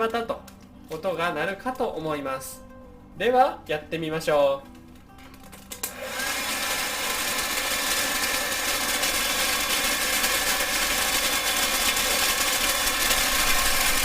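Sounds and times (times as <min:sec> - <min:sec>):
hair dryer whirring: 0:05.8 - 0:14.0.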